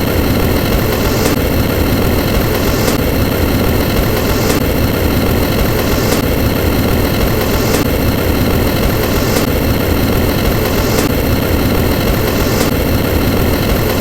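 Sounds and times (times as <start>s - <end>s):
loud engine-like rumble: 0.0s - 14.0s.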